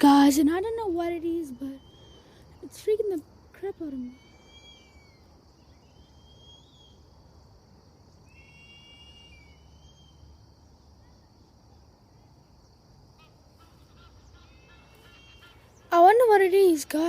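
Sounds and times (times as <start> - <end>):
drawn-out high bird calls: 1.5 - 2.8, 4.0 - 7.1, 8.2 - 10.3, 13.2 - 17.0
short bird chirps: 4.1 - 7.0, 8.2 - 10.3.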